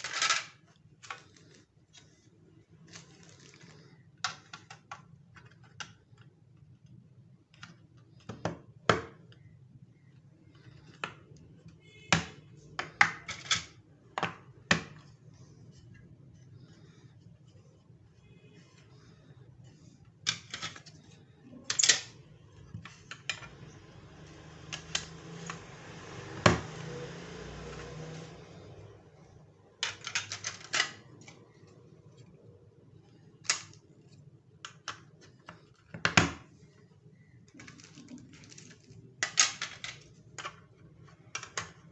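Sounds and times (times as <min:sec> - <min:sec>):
plastic toy track pieces clacking: 0:00.0 - 0:01.4, 0:37.6 - 0:40.6
soft steady noise: 0:00.0 - 0:41.9.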